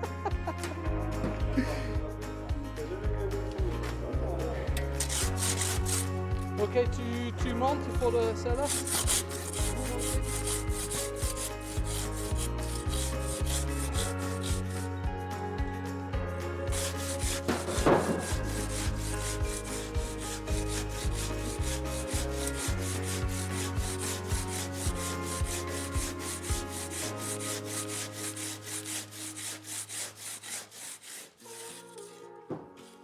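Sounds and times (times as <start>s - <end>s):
handsaw cutting stone: 5.0s - 6.2s, 8.6s - 15.0s, 16.7s - 32.2s.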